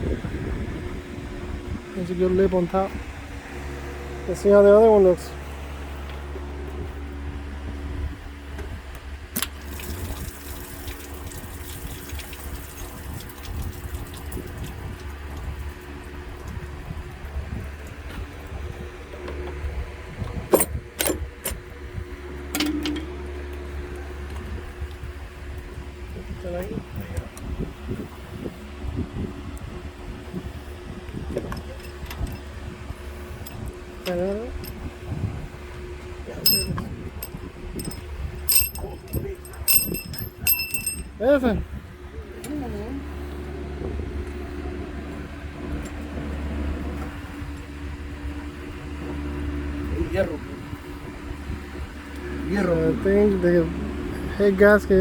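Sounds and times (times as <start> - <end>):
steady low hum: 0.0 - 55.0
metal tools clinking and clanking: 20.5 - 21.2, 22.6 - 23.2, 36.4 - 41.2.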